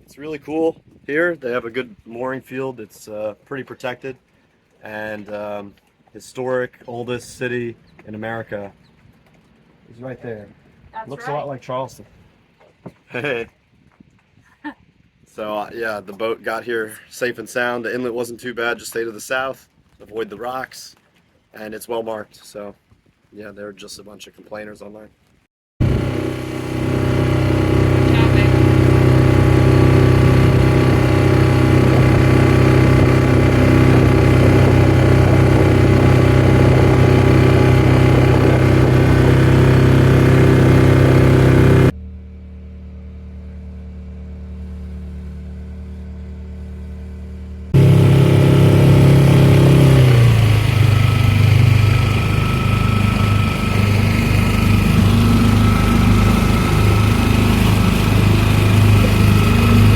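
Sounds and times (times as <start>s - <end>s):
boat engine running: 25.8s - 59.9s.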